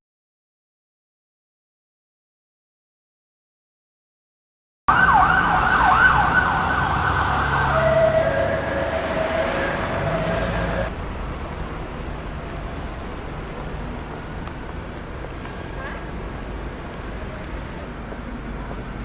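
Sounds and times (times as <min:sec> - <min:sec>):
emergency vehicle siren: 0:04.9 - 0:11.0
traffic hum: 0:04.9 - 0:19.0.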